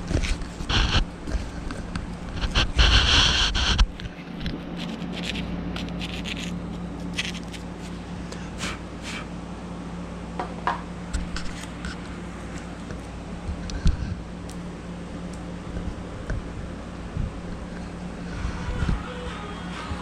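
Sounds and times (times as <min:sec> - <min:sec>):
steady low hum: 0:00.0 - 0:20.0
knife scraping and whittling: 0:04.6 - 0:08.0.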